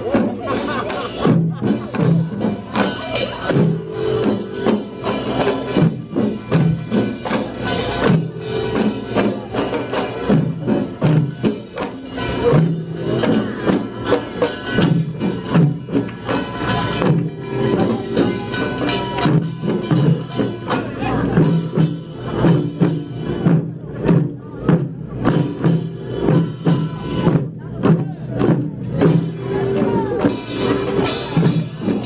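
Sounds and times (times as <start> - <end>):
drums: 0.0 - 32.0
small hand gongs: 0.5 - 23.5.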